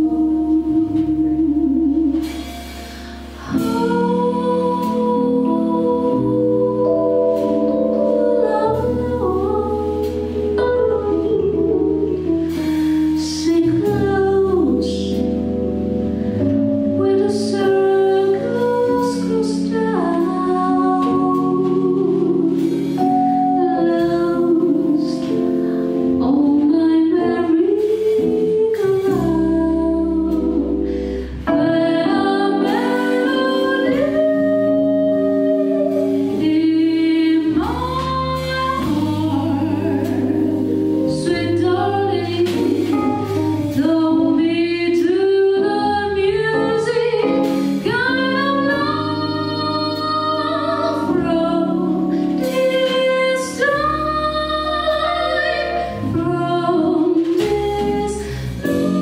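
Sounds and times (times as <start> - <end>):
double bass: 0.0 - 59.0
drums: 0.0 - 59.0
piano: 0.0 - 59.0
woman singing jazz ballad: 0.0 - 59.0.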